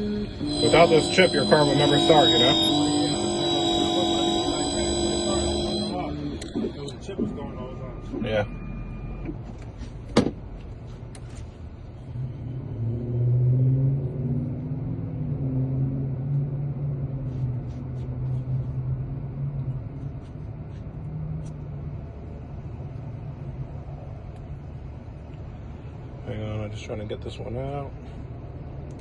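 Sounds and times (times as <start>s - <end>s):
vehicle engine humming: 0.0s - 13.2s.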